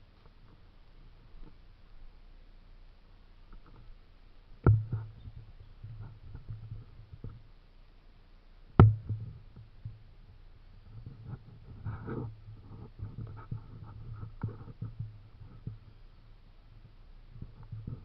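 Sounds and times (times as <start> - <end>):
sharp knocks with dull thud: 4.6 - 5.1, 8.8 - 9.3
faint rustling: 8.8 - 18.0.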